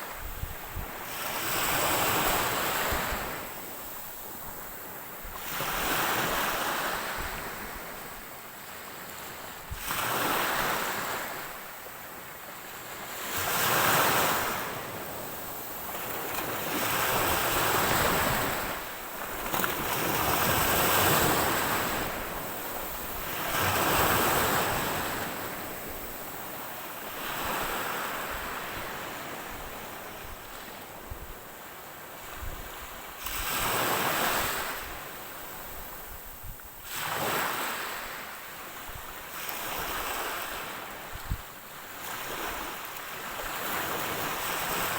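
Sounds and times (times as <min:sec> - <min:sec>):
ocean waves breaking on shore: 0:00.0 - 0:44.9.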